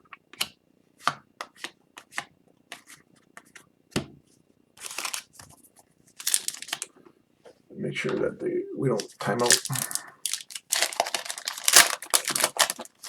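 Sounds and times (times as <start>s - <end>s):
card rustle: 4.8s - 5.6s, 6.2s - 6.9s, 9.0s - 13.0s
cards flipped by hand: 6.2s - 6.9s.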